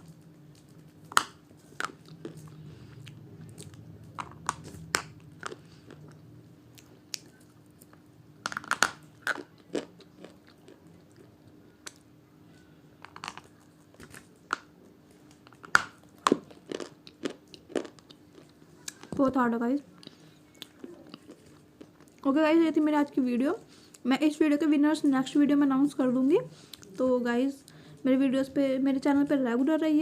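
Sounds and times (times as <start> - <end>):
chewing: 1.6 - 12.0, 15.4 - 19.1, 19.9 - 22.3
sharp cracks and crunches: 8.4 - 10.4, 15.3 - 19.1.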